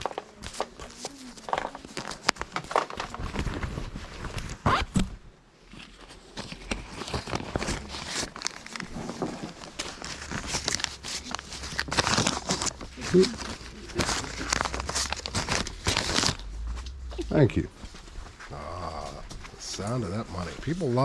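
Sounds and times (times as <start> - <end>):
rustling: 0.0 - 21.0
shuffling footsteps: 0.0 - 21.0.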